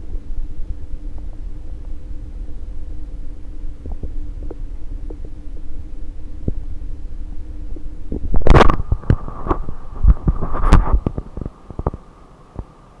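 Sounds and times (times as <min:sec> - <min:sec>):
low belly rumble: 0:00.0 - 0:12.7
faint steady whine: 0:00.0 - 0:13.0
knocks and crackles: 0:07.6 - 0:12.7.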